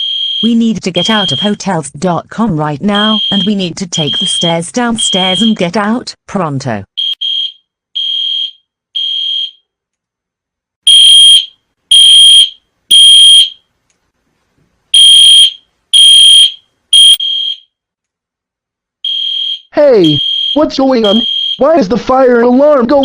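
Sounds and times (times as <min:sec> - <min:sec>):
fire alarm beeping: 0:00.0 - 0:01.6, 0:03.0 - 0:05.6, 0:07.0 - 0:09.7, 0:10.9 - 0:13.6, 0:15.0 - 0:17.7, 0:19.0 - 0:21.7.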